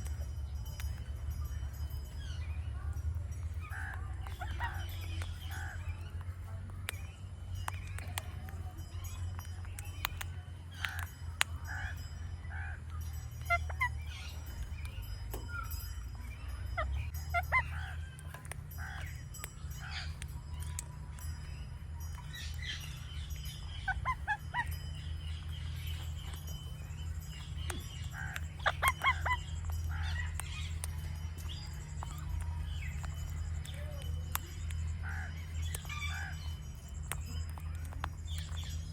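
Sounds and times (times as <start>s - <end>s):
low hum: 0.0s - 38.9s
parakeet clicks: 0.0s - 38.9s
parakeet chirps and squawks: 3.5s - 6.4s, 9.8s - 38.9s
parakeet squawks: 13.4s - 14.3s, 16.8s - 18.1s, 23.7s - 25.0s, 28.0s - 30.7s.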